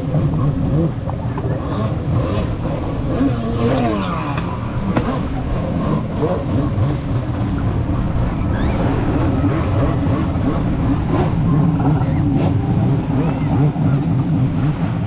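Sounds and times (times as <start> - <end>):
jet ski engine running: 0.0 - 15.0.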